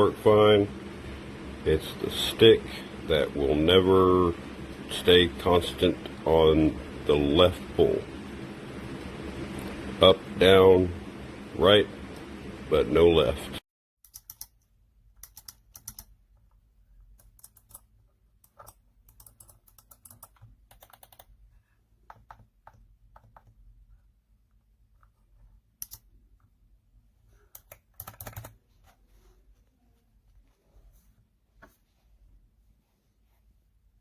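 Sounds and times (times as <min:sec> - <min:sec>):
keypad keys clicking: 0:14.0 - 0:14.6, 0:15.2 - 0:16.1, 0:18.5 - 0:21.3, 0:27.6 - 0:28.6.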